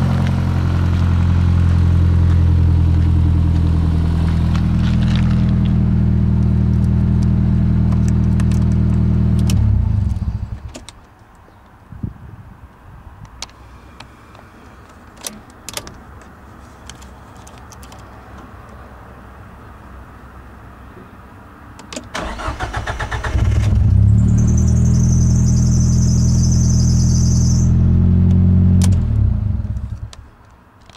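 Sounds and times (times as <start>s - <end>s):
high-pitched belt squeal: 24.0s - 27.8s.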